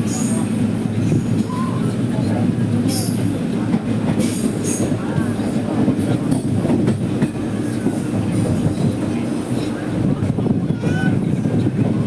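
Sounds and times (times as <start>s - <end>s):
train rumble from on board: 0.0s - 12.0s
train wheels clicking over rails: 2.4s - 10.4s.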